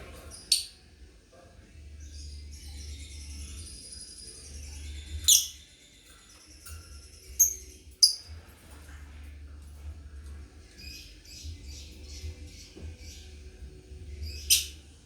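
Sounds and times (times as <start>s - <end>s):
lovebirds chirping: 1.8s - 8.4s, 10.3s - 15.0s.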